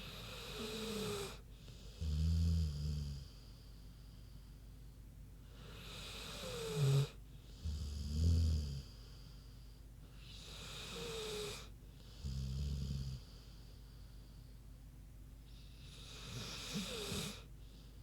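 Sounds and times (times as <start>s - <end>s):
dog snoring: 0.0s - 3.5s, 5.5s - 9.1s, 10.2s - 13.6s, 15.5s - 17.9s.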